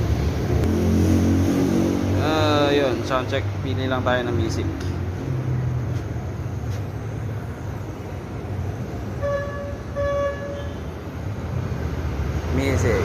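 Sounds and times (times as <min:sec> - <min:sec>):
street traffic noise: 0:00.0 - 0:13.0
vehicle horn beeps: 0:09.2 - 0:11.0.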